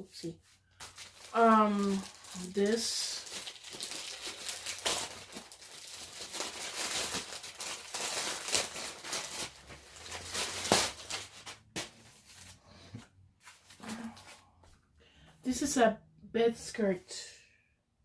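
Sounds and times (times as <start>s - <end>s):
packaging crinkling: 0.8s - 12.5s.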